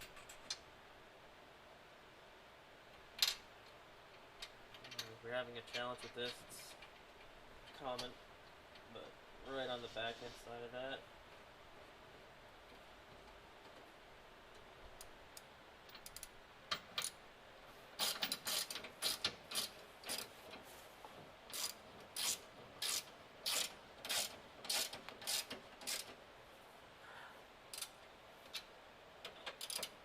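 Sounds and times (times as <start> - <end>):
hand ratchet clicking: 18.0 - 20.3, 21.5 - 26.2, 27.7 - 30.0.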